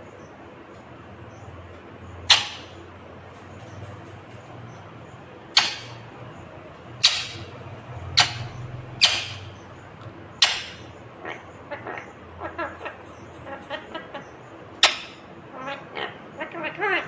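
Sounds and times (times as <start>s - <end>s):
parakeet chattering: 2.0s - 2.9s, 3.5s - 17.0s
parakeet screeching: 2.3s - 2.8s, 5.6s - 6.0s, 7.0s - 9.6s, 10.4s - 17.0s.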